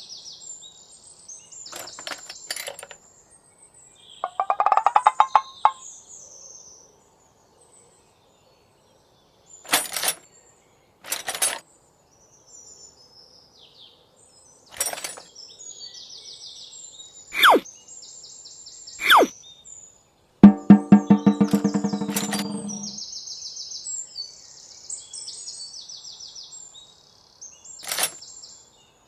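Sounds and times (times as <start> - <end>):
whistle falling in pitch: 17.4 - 17.6, 19.0 - 19.3.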